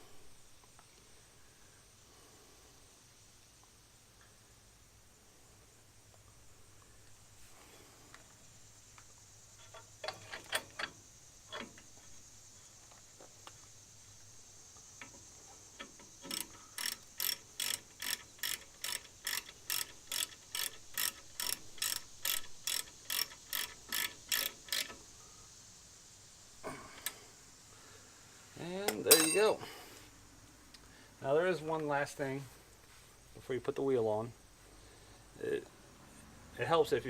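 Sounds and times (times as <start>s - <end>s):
ratchet wrench clicking: 15.8s - 25.0s.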